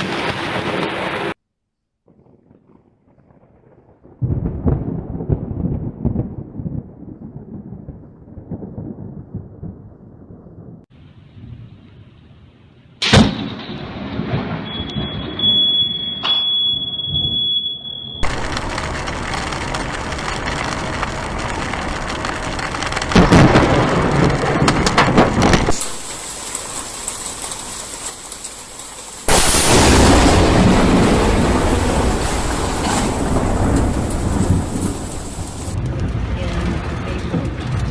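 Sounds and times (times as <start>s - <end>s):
thunder cracks and rumbling: 2.1s - 12.0s, 13.0s - 15.7s, 18.2s - 28.4s, 29.2s - 37.9s
rain hiss: 18.2s - 24.3s, 25.7s - 35.8s.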